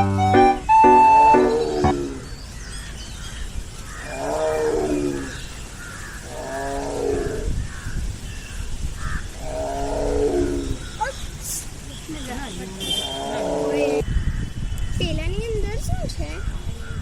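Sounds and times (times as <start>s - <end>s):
big cat calling: 0.7s - 2.4s, 12.8s - 14.0s.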